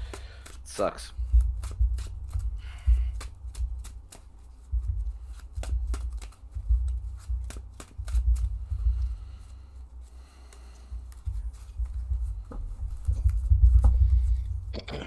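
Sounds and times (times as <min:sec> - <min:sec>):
cards knocking against table: 0:00.0 - 0:08.6
cards being shuffled: 0:00.0 - 0:14.7.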